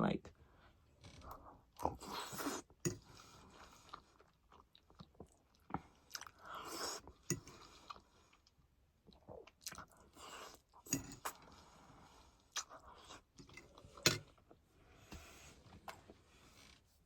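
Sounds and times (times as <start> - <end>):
person chewing: 1.1 - 14.4.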